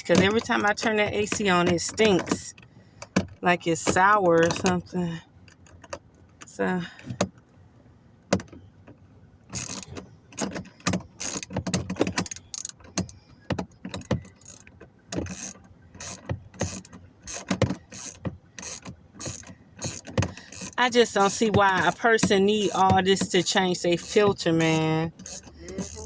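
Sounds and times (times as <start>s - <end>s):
hand ratchet clicking: 9.6s - 13.2s, 13.9s - 26.0s.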